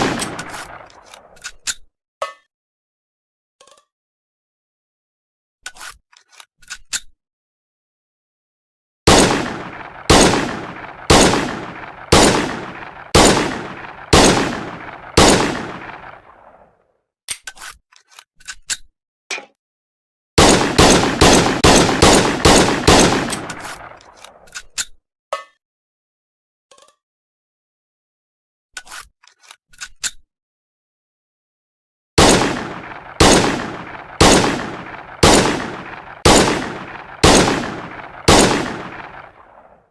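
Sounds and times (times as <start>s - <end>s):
pistol shots echoing: 0.0s - 1.0s, 9.1s - 16.6s, 20.4s - 24.0s, 32.2s - 39.8s.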